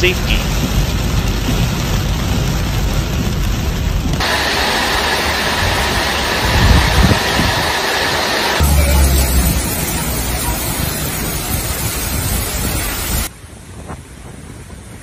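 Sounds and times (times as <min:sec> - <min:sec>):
storm wind and heavy rain: 0:00.0 - 0:15.0
low gusty rumbles: 0:00.5 - 0:13.3.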